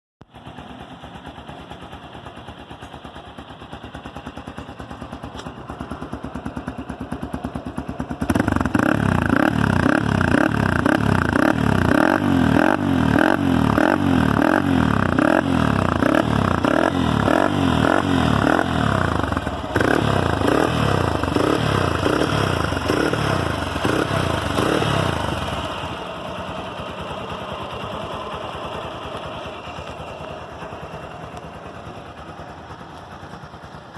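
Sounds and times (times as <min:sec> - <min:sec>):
motorcycle engine idling and revving: 0:00.2 - 0:33.9.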